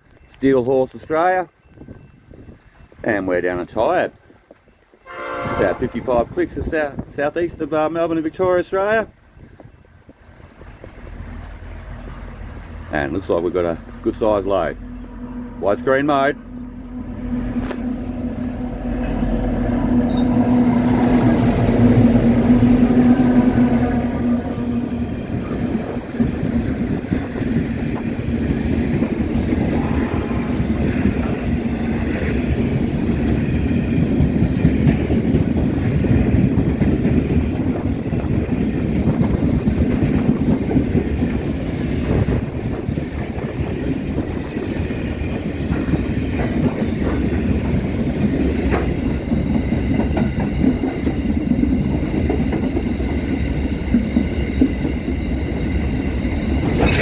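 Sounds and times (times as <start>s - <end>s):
freight train rumble: 0.0s - 57.0s
high-pitched wheel squeal: 20.0s - 20.6s
wagon wheels clacking over rail joints: 30.6s - 57.0s.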